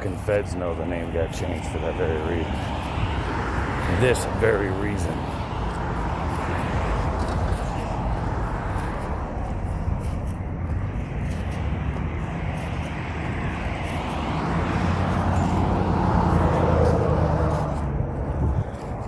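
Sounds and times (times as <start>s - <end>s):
vehicle passing by: 0.0s - 19.0s.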